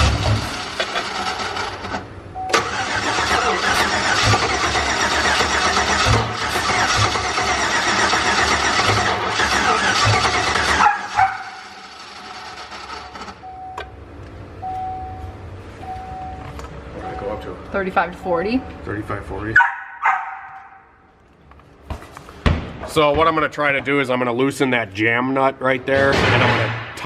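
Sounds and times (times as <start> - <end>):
engine cranking on starter: 0.0 - 13.5.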